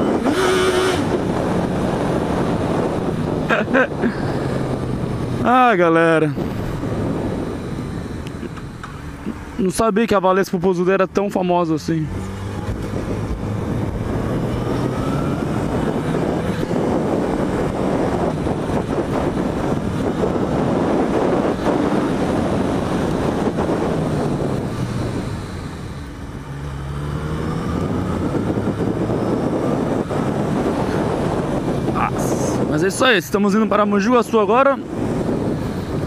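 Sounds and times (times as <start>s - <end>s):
wind rushing over microphone: 0.0s - 36.0s
motorcycle engine running: 12.1s - 32.7s.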